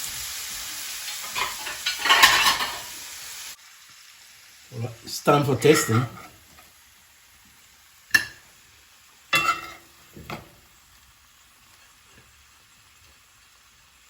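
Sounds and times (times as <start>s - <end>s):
utensil clinking against dish: 1.1s - 2.9s, 9.4s - 10.5s.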